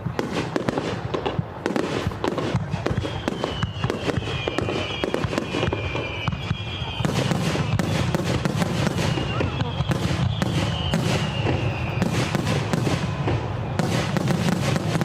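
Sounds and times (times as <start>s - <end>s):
fireworks crackling and bangs: 0.0s - 15.0s
high wavering whistle: 2.9s - 8.0s, 8.9s - 12.2s.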